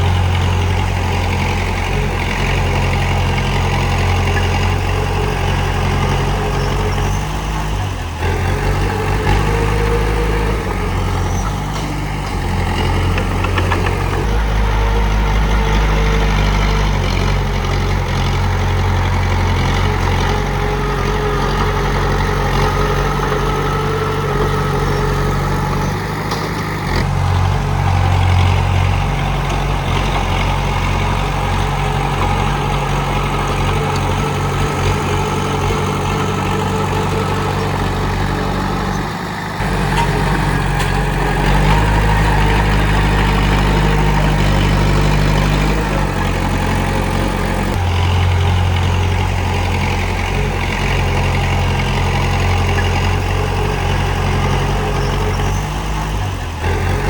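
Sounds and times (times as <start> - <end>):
bulldozer diesel engine running: 0.0 - 57.0.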